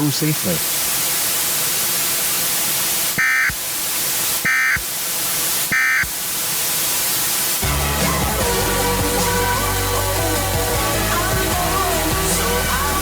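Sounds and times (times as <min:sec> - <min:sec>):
static hiss: 0:00.0 - 0:13.0
warbling data tone bursts: 0:03.2 - 0:03.6, 0:04.4 - 0:04.9, 0:05.6 - 0:06.1.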